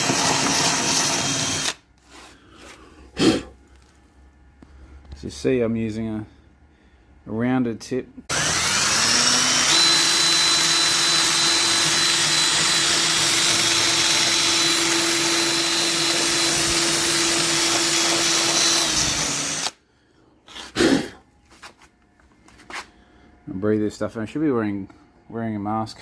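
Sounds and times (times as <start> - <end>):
electric drill motor whine: 0.0 - 1.8, 8.3 - 19.8.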